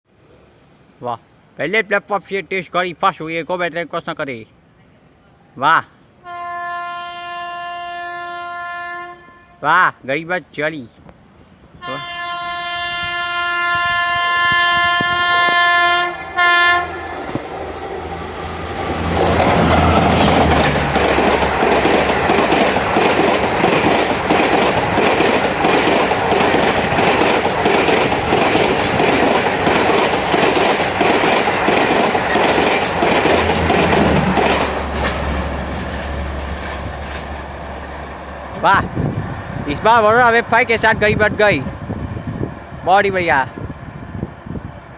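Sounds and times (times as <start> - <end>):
locomotive horn blasts: 6.2 - 9.6, 11.8 - 17.1
train rushing past: 11.8 - 44.9
wheels clattering over rail joints: 16.9 - 38.6.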